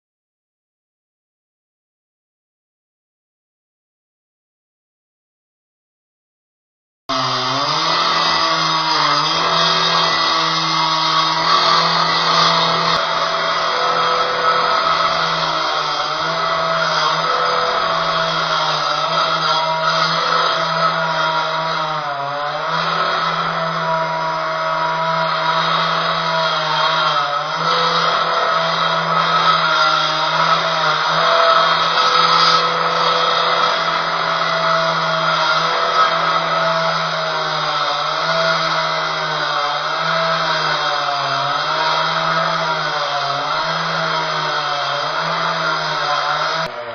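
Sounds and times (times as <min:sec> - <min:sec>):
concrete cutter grinding: 0:07.1 - 0:46.9.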